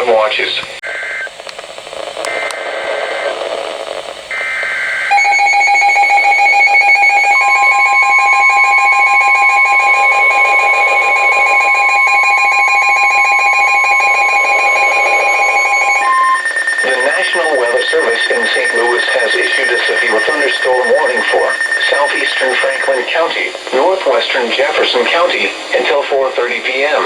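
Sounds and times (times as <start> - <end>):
steady high beep: 5.1 - 25.0
warbling digital data bursts: 6.8 - 25.4.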